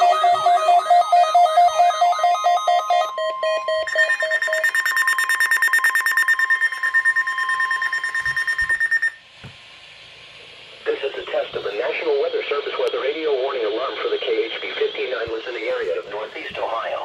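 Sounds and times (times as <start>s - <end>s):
rapid high beeping: 0.0s - 9.2s
warbling alert tones: 0.0s - 9.2s.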